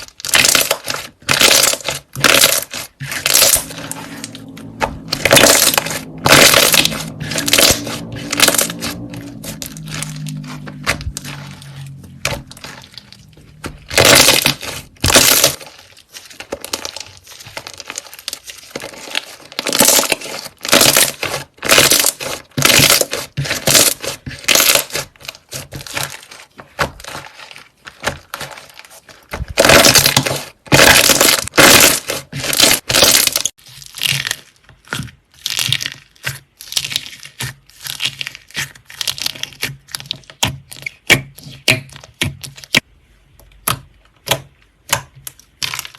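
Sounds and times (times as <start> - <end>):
slime crackling when squeezed: 0.2 - 25.0.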